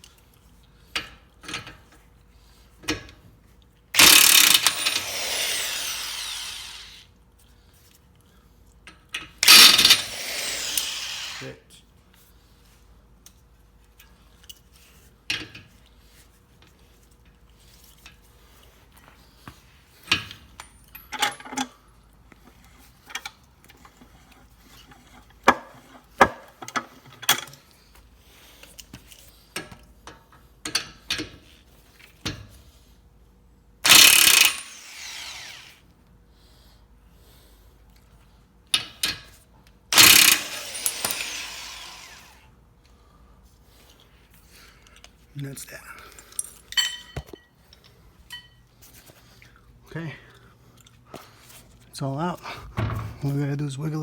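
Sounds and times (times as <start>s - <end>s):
loud rasping burst: 4.0s - 7.0s, 9.4s - 11.6s, 33.8s - 35.8s, 39.9s - 42.4s
tool ratcheting: 4.0s - 7.0s, 9.4s - 11.5s, 33.8s - 35.8s, 39.9s - 42.4s.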